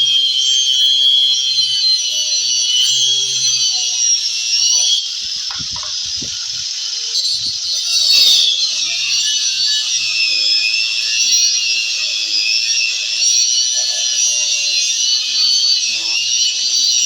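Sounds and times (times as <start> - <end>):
power tool cutting wood: 0.0 - 17.0
knocks: 5.2 - 6.4.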